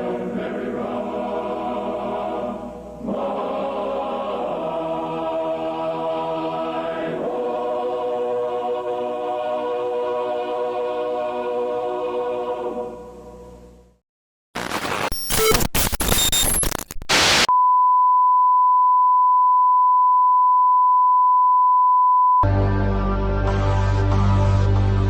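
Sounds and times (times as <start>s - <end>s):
choir singing an anthem: 0.0s - 13.4s
harsh static: 14.6s - 17.5s
scattered electronic tones: 14.6s - 17.5s
music: 22.4s - 25.0s.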